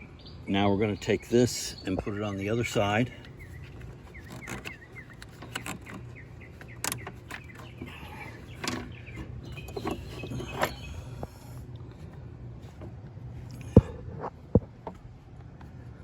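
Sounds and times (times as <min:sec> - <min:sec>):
bird chirps: 0:00.0 - 0:11.4
steady low hum: 0:00.0 - 0:16.0
light clicks and knocks: 0:03.2 - 0:15.8.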